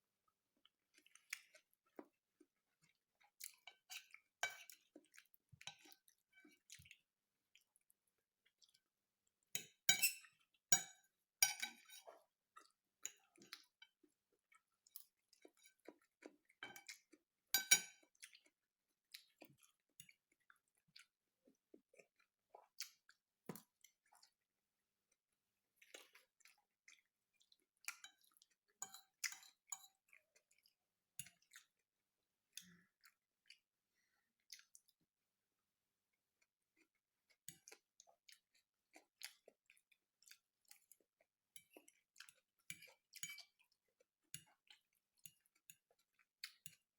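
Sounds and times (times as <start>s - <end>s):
person chewing: 37.6s - 41.0s.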